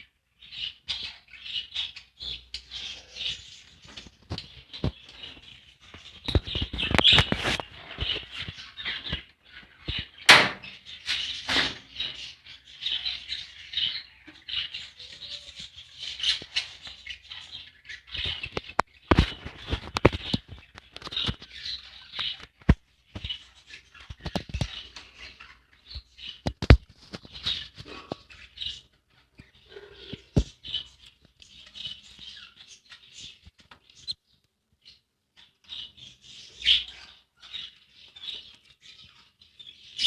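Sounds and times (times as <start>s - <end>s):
budgerigars chattering and chirping: 0.0s - 40.0s
clicks and taps of birds moving: 3.6s - 11.8s, 17.9s - 34.6s.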